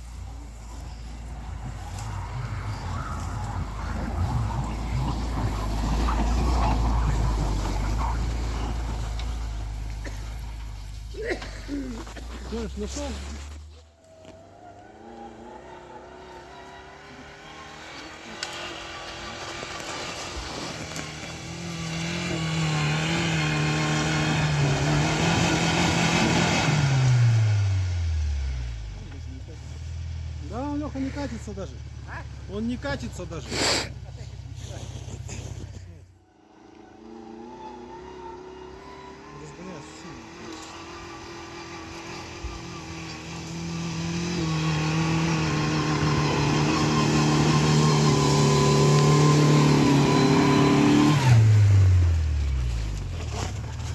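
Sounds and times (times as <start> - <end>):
engine revving under load: 0.0 - 53.9.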